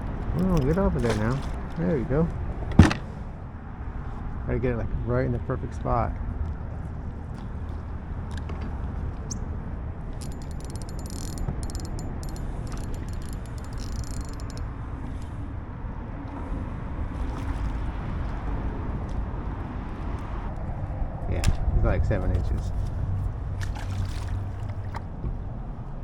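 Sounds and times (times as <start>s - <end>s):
fishing reel clicking: 10.2s - 15.3s.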